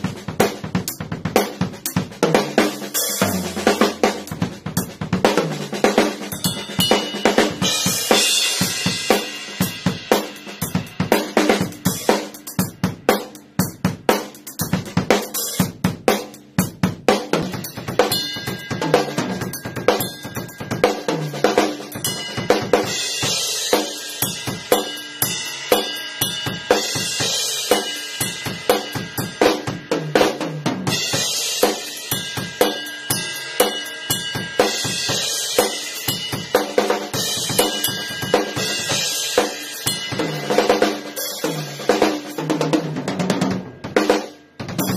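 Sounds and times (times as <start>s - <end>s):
snare and bass drum strokes: 0.0s - 26.0s
cymbals washing: 6.2s - 10.4s, 17.8s - 28.7s, 31.0s - 41.4s.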